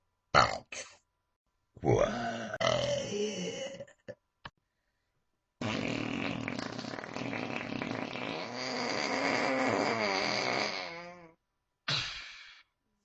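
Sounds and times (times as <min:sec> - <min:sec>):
person passing gas: 0:01.8 - 0:04.1, 0:05.6 - 0:12.7.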